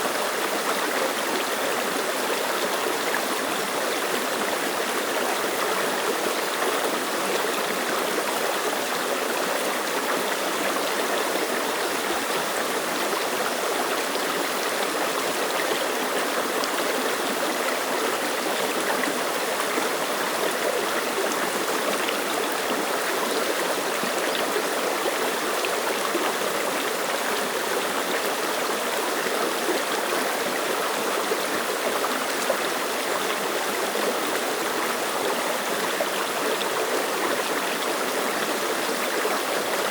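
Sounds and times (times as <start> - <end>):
stream running over rocks: 0.0 - 39.9.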